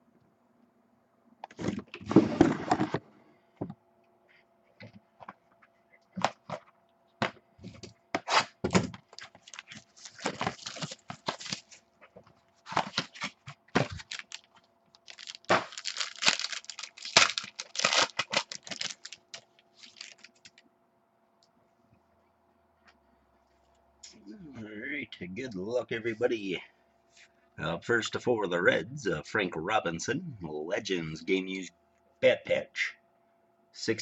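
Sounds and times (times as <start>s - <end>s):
packaging tearing and crinkling: 9.1s - 11.8s, 12.7s - 20.6s.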